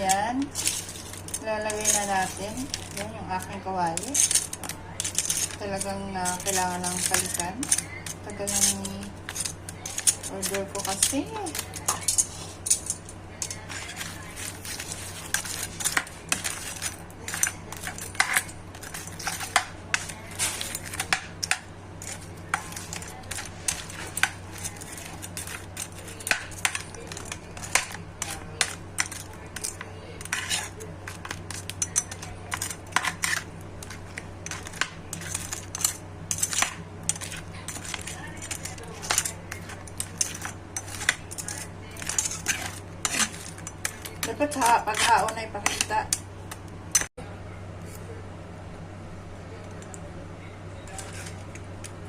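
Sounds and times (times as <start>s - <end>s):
metal utensil scraping a pan: 0.0s - 46.2s.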